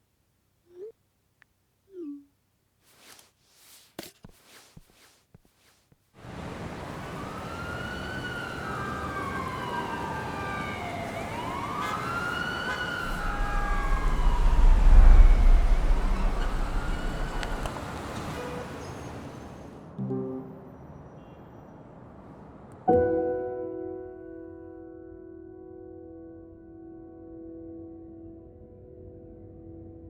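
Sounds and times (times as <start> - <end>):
emergency vehicle siren wailing: 6.4 - 19.5
deep rumble: 13.0 - 17.9.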